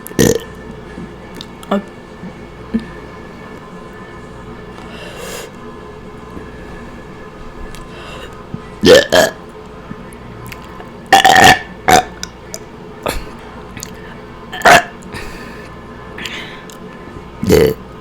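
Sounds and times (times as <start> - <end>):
woman burping: 0.2 - 0.5, 8.8 - 9.4, 11.1 - 12.2, 14.5 - 15.0, 17.4 - 17.8.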